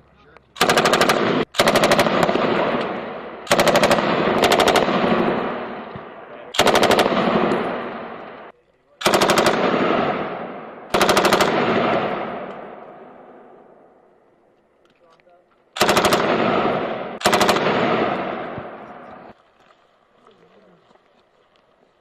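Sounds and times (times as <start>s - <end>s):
machine gun firing bursts: 0.6s - 5.9s, 6.5s - 12.8s, 15.8s - 19.2s
long gunfire echo: 0.6s - 14.0s, 15.8s - 19.4s.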